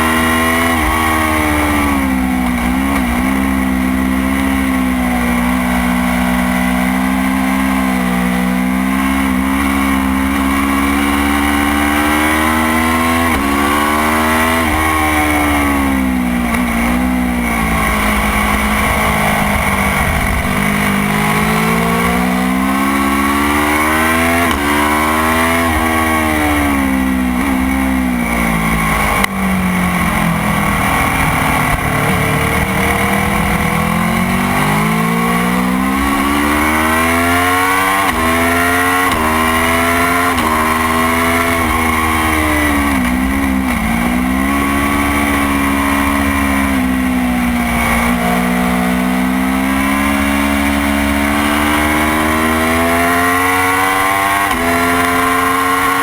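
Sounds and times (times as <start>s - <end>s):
motorcycle engine revving through gears: 0.0s - 56.0s
steady rushing noise: 12.4s - 48.8s.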